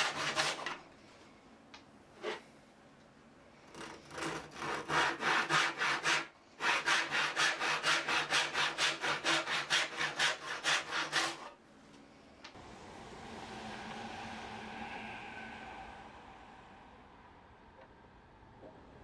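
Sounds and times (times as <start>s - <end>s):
hand saw cutting wood: 0.0s - 0.8s, 3.7s - 11.6s.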